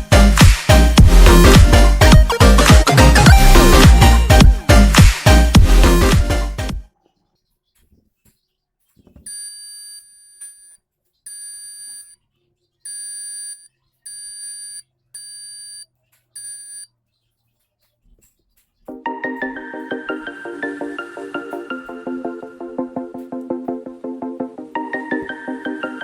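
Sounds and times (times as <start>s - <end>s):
door alarm beeping: 9.2s - 12.2s, 12.8s - 17.0s.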